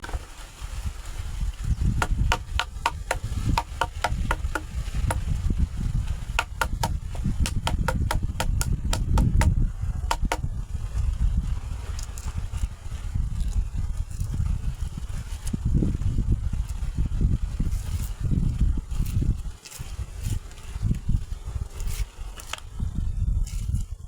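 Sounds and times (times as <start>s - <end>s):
wind rumble on microphone: 0.0s - 24.0s
sharp chopping strikes: 2.0s - 5.3s, 6.4s - 10.5s.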